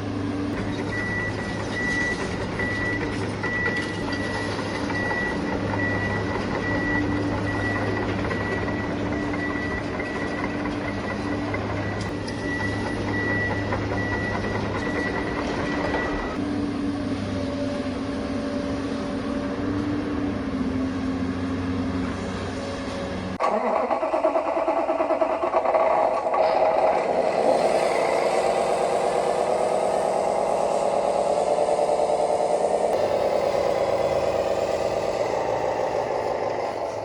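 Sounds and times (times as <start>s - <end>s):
diesel engine drone: 0.0s - 37.0s
high reversing beep: 0.7s - 16.4s.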